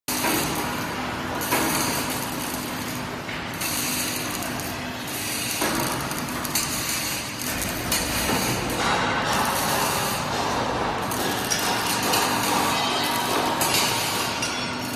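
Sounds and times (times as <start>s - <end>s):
assembly machine running: 0.1s - 14.9s.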